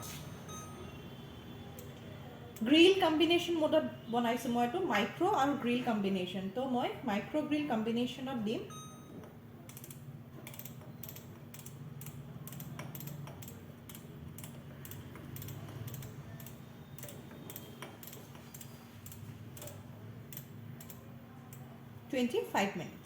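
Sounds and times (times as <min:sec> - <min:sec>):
microwave oven humming: 0:00.0 - 0:23.0
faint irregular clicks: 0:09.7 - 0:21.8.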